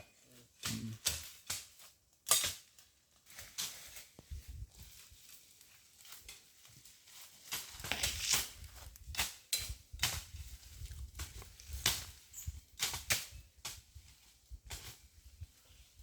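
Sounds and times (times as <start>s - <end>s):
machete chopping through brush: 0.6s - 2.8s, 7.4s - 10.4s, 11.1s - 13.8s.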